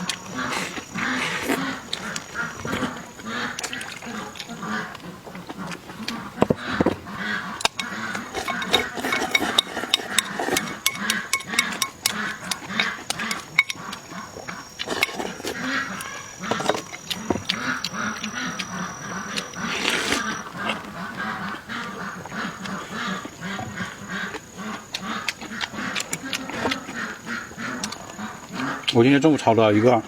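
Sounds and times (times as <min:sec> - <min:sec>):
chewing and smacking: 0:00.0 - 0:30.0
sharp clicks: 0:09.5 - 0:14.0.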